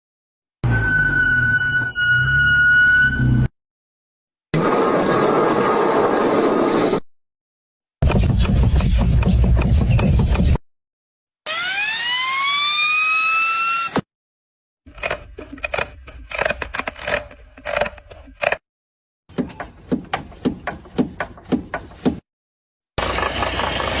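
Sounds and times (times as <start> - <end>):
rising mechanical whine: 11.5 - 14.0
irregular clicking and knocking: 19.3 - 22.2.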